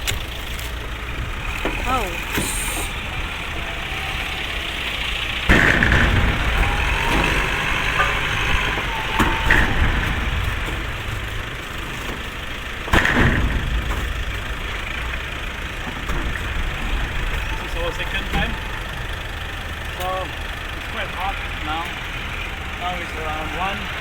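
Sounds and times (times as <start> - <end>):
vehicle engine idling: 0.0 - 24.0
sudden loud knocks: 5.4 - 17.5.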